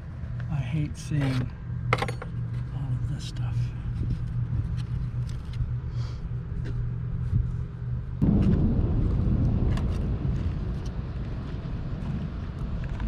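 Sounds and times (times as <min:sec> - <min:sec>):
engine-like hum: 0:00.0 - 0:13.0
rough rumble: 0:03.9 - 0:13.0.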